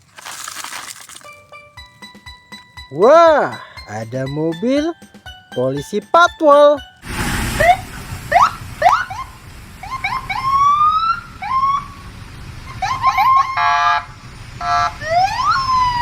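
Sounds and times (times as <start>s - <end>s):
police siren whooping: 7.6s - 16.0s
buzzing horn blasts: 13.5s - 15.0s.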